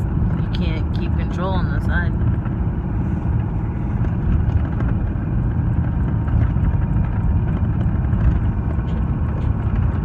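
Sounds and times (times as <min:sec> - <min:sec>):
car road and engine rumble: 0:00.0 - 0:10.0.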